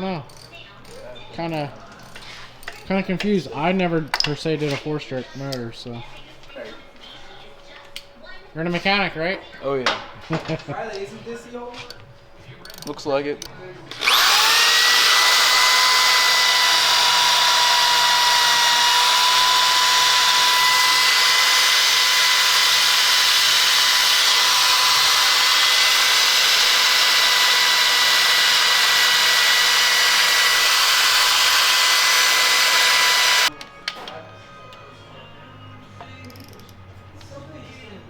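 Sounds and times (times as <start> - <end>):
electric motor whine: 13.9 - 33.5.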